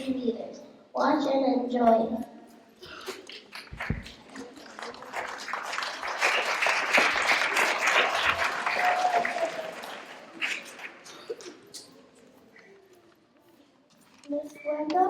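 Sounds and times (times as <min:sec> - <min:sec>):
audience applauding: 0:03.3 - 0:11.6.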